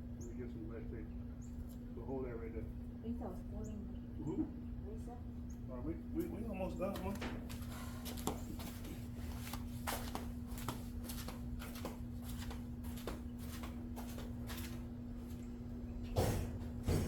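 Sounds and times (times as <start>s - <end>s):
steady low hum: 0.0s - 17.0s
loud knocks: 16.2s - 17.0s.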